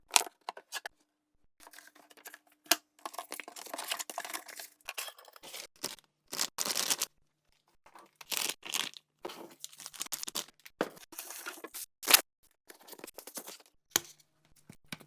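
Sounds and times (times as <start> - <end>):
paper and plastic tearing: 5.5 - 7.1, 8.3 - 10.5, 11.2 - 12.2.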